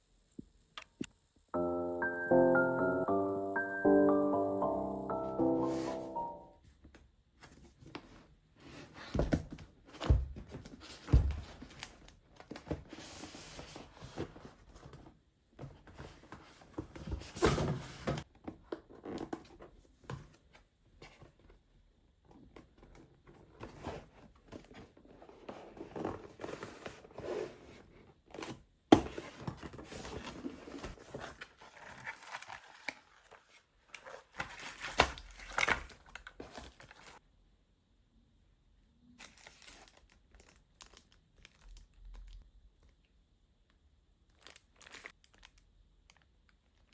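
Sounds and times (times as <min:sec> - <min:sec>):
packaging tearing and crinkling: 0:39.2 - 0:42.4, 0:44.3 - 0:46.2.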